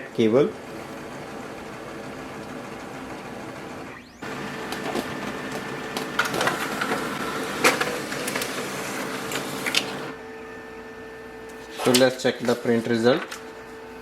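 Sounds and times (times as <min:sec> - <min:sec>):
laser printer motor running: 0:00.4 - 0:14.0
paper path clicks and rattles: 0:04.2 - 0:10.1, 0:11.7 - 0:13.5.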